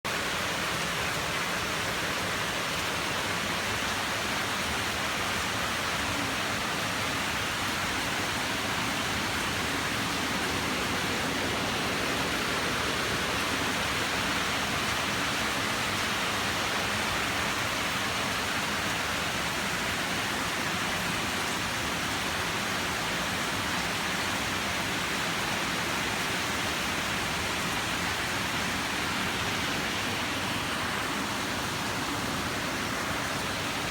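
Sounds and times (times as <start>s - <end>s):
steady rushing noise: 7.2s - 15.9s.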